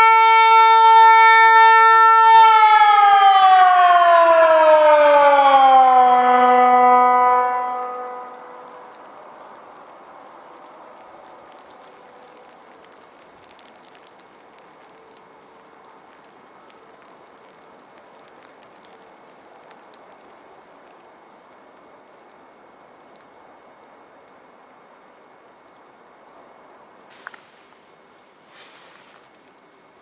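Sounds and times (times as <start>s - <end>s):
outdoor hiss with faint ticks: 7.8s - 30.0s.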